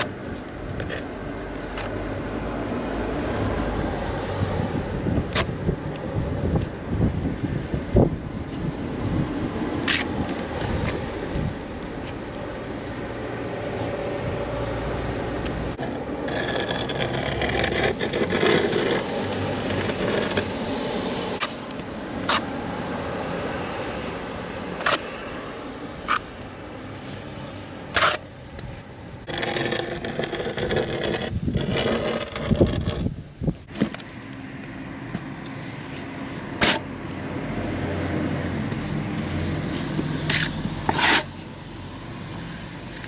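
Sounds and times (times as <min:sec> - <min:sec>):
trowel scraping render: 0:09.8 - 0:11.0, 0:15.7 - 0:22.7, 0:24.0 - 0:25.2, 0:25.9 - 0:26.3, 0:27.9 - 0:33.2, 0:35.8 - 0:37.0, 0:37.6 - 0:41.5.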